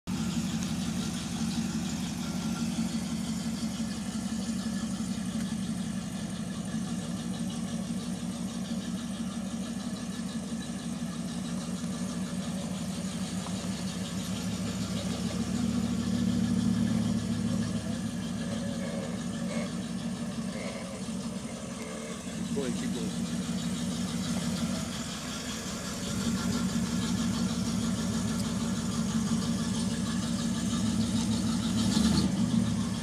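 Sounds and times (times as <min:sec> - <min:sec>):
car engine: 0:00.0 - 0:33.0
road noise: 0:00.0 - 0:33.0
low groan from car differential: 0:02.2 - 0:25.2.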